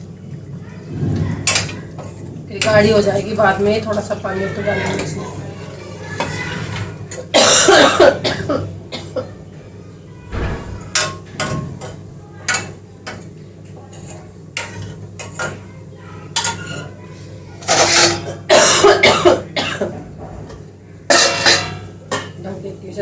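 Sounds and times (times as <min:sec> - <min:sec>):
person coughing: 0:07.4 - 0:09.3, 0:18.5 - 0:20.0.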